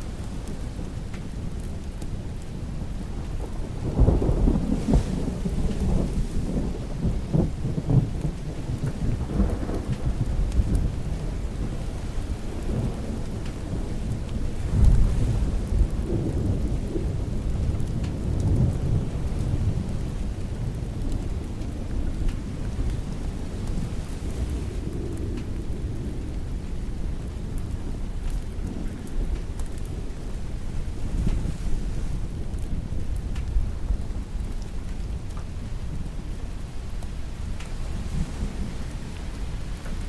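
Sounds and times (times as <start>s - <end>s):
steady rain: 0.0s - 40.0s
thunder rumbling: 0.0s - 40.0s.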